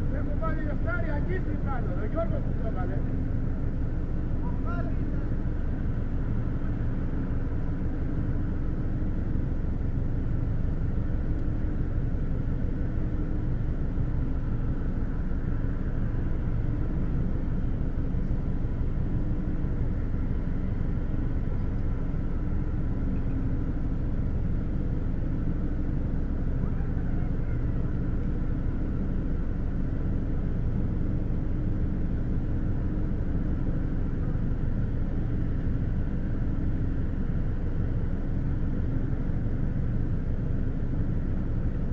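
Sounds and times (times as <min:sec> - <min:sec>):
faint steady hums: 0:00.0 - 0:41.9
ship engines rumbling: 0:00.0 - 0:41.9.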